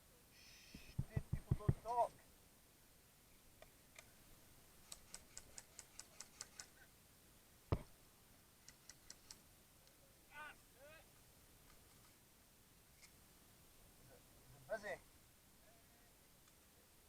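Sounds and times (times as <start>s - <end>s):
faint high clicks: 4.8s - 6.8s, 8.6s - 10.0s.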